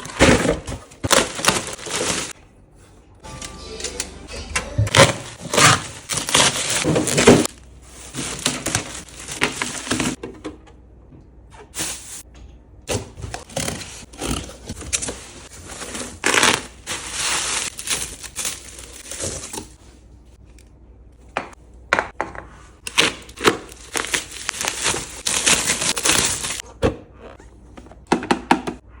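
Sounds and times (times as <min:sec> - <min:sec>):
plastic packaging crinkling and tearing: 0:00.0 - 0:02.4, 0:04.9 - 0:10.2, 0:13.4 - 0:19.8, 0:22.9 - 0:26.6.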